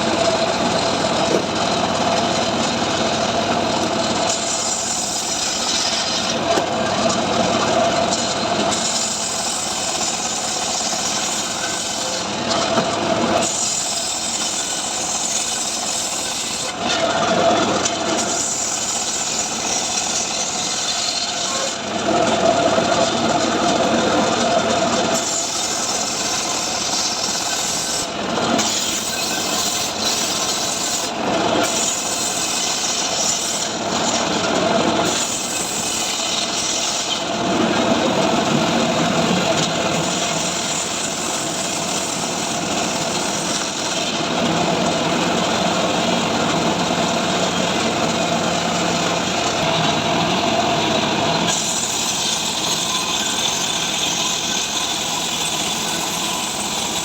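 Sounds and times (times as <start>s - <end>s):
chainsaw cutting wood: 0.0s - 22.5s, 24.9s - 57.0s.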